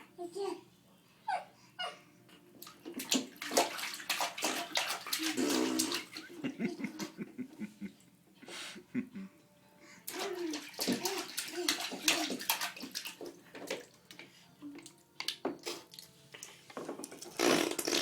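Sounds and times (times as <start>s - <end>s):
baby blowing raspberries: 17.3s - 18.0s.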